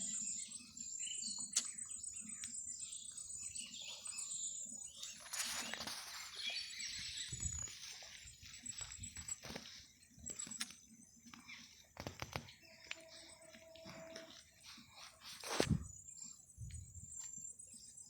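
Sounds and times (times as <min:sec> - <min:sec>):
small birds chirping: 0:00.0 - 0:18.0
brief rustling: 0:13.8 - 0:15.9.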